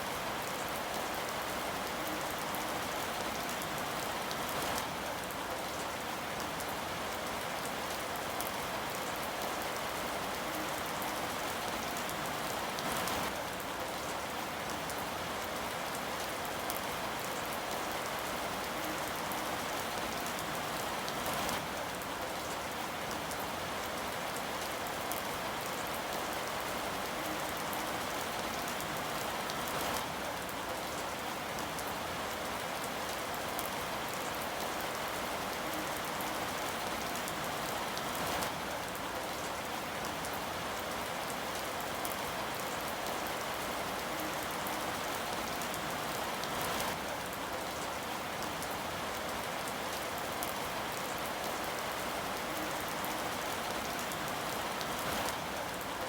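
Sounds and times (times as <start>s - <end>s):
rain patter: 0.0s - 56.0s.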